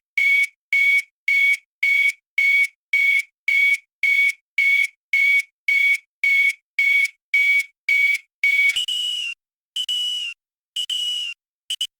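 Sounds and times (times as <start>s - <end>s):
electronic alarm beeping: 8.6s - 11.9s.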